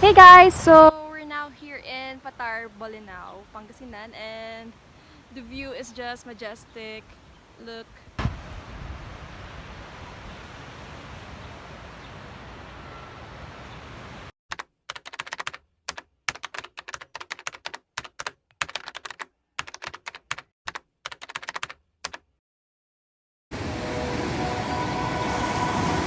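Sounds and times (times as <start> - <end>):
wind: 0.0 - 14.3, 23.5 - 26.0.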